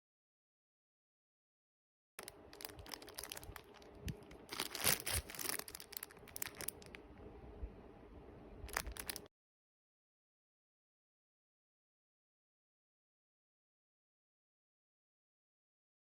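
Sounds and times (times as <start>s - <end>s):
tool kit rustling and clicking: 2.2s - 6.9s.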